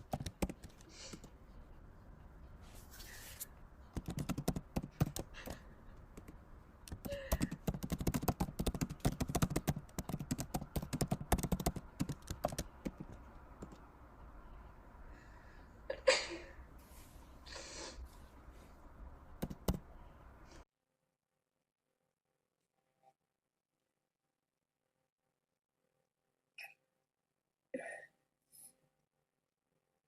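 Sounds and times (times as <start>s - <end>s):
computer keyboard typing: 0.0s - 1.3s, 3.9s - 13.8s, 19.4s - 19.9s.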